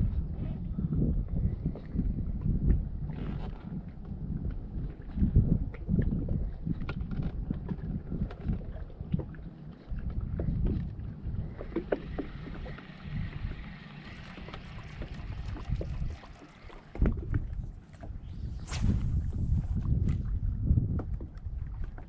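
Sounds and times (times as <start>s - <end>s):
wind buffeting the microphone: 0.0s - 22.0s
soft hiss: 17.6s - 20.2s.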